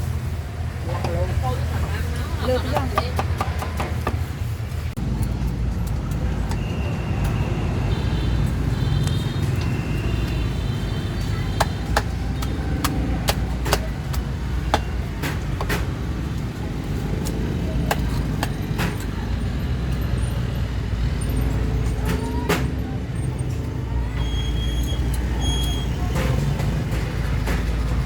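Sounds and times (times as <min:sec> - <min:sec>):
low rumble of road traffic: 0:00.0 - 0:28.0
cleaver chopping meat: 0:11.5 - 0:16.1, 0:17.1 - 0:19.0.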